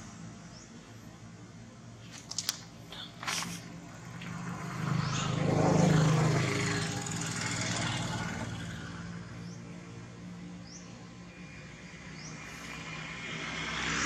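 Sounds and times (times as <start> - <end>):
vehicle engine running: 2.8 - 11.7.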